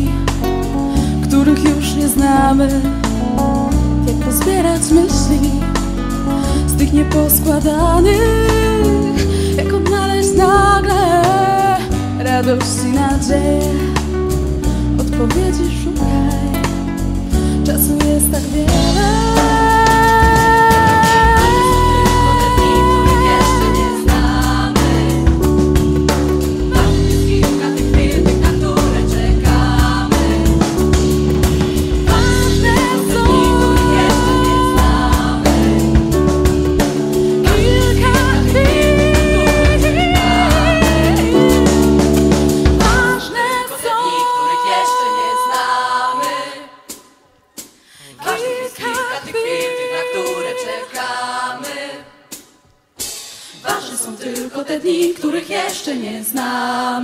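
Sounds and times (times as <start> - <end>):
pop music with drum beat: 17.7 - 47.0, 53.0 - 56.8
voices singing long notes: 19.4 - 25.4, 31.7 - 36.4, 37.1 - 46.7, 48.2 - 52.1.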